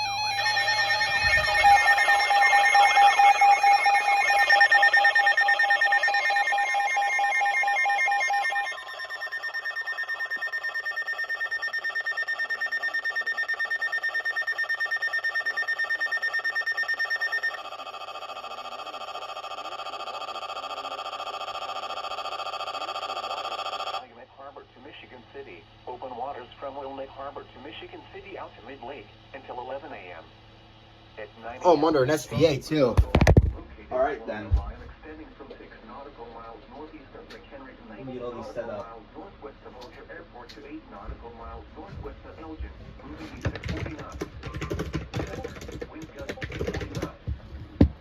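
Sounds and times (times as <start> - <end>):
electronic alert tone: 0.0 - 17.8
rapidly pulsing beep: 0.0 - 24.0, 31.6 - 33.3.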